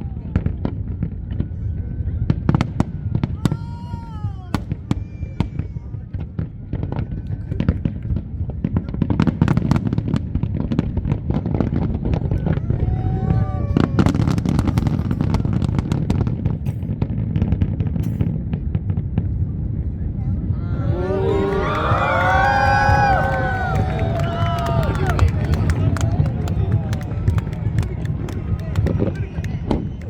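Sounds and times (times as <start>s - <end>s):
fireworks bangs and crackles: 0.0s - 30.0s
voices calling out: 20.7s - 30.0s.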